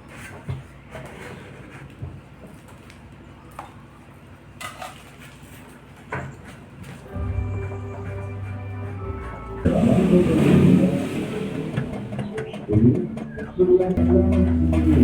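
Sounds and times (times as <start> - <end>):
low steady hum: 7.1 - 13.0.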